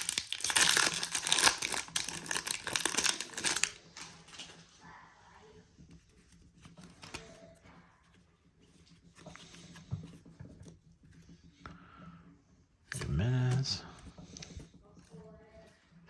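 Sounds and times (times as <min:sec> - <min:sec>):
foil wrapper crinkling and tearing: 0:00.0 - 0:04.6.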